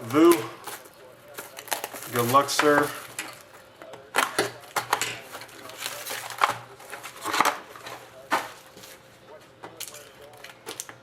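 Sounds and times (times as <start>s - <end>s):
cardboard box packaging rustling: 0.1s - 3.4s, 4.6s - 9.1s.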